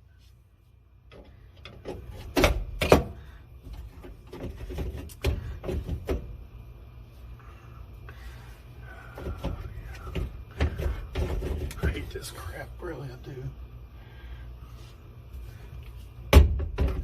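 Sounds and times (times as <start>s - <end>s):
hand tools knocking and scraping: 9.2s - 12.2s.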